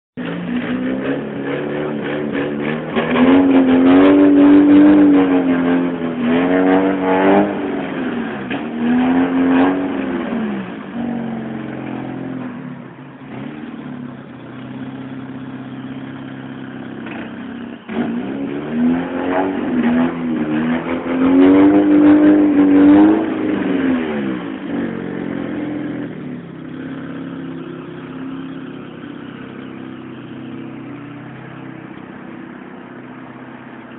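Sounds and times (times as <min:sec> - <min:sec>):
car engine revving and idling: 0:00.2 - 0:33.9.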